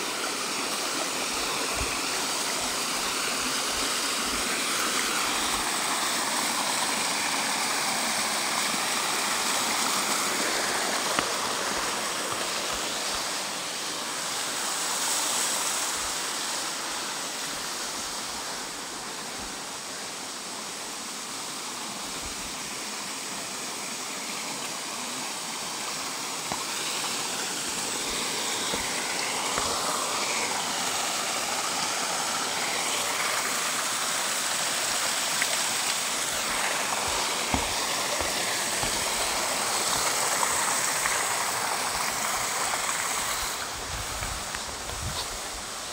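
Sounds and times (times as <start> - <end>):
mountain stream rushing: 0.0 - 45.9.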